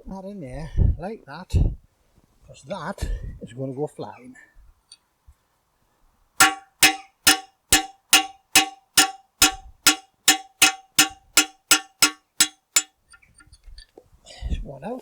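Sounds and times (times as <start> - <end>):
hammer blows on steel: 6.4 - 12.9.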